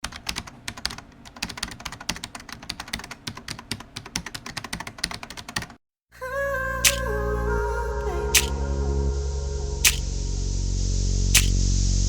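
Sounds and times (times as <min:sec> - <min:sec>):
keyboard typing: 0:00.0 - 0:05.8.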